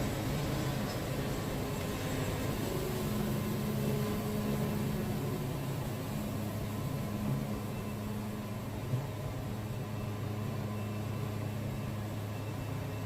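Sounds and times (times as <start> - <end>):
sawmill engine droning: 0.0 - 13.0.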